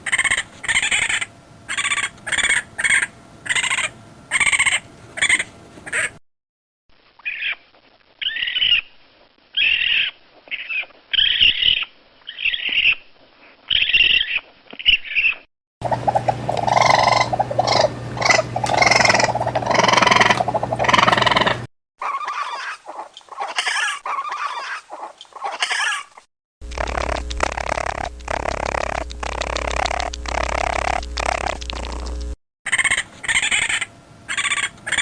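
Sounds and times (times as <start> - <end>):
raccoon calls: 0.0 - 6.2, 7.2 - 7.6, 8.2 - 8.9, 9.5 - 13.0, 13.7 - 32.1, 32.7 - 35.0
steady low hum: 0.0 - 6.2, 15.8 - 21.7, 26.6 - 35.0.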